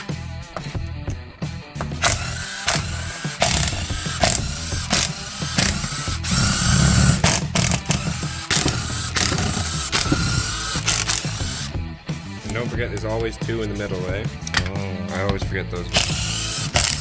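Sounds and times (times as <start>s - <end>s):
impact gun spinning out bolts: 2.0s - 11.7s, 15.9s - 17.0s.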